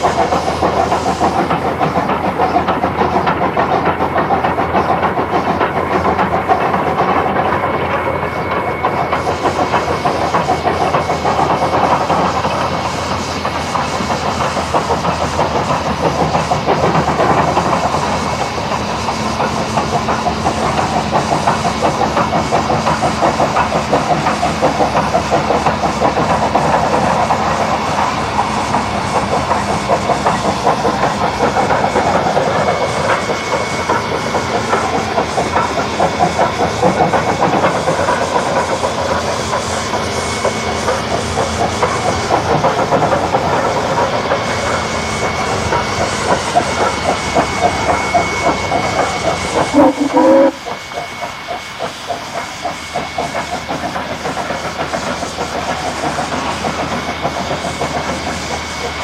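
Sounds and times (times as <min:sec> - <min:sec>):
steam hiss: 0:00.0 - 0:59.0
steam locomotive exhaust beats: 0:00.0 - 0:59.0.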